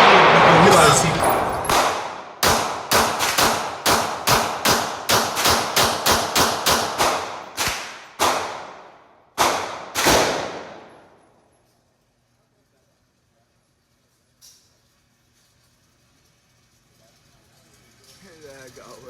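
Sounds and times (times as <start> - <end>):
gunshots echoing: 0.0 - 11.2.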